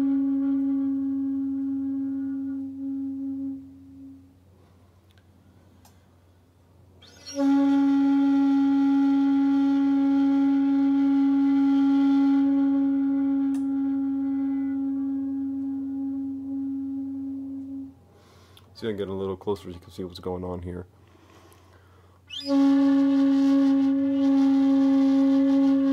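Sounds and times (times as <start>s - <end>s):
bamboo flute long note: 0.0s - 4.5s, 7.0s - 18.4s, 22.3s - 25.9s
airy breath noise: 18.1s - 18.8s, 21.0s - 22.3s.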